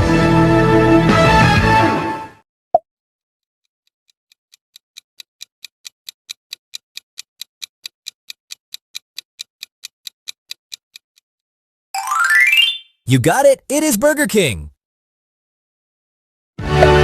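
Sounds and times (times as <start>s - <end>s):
clock ticking: 3.8s - 11.3s.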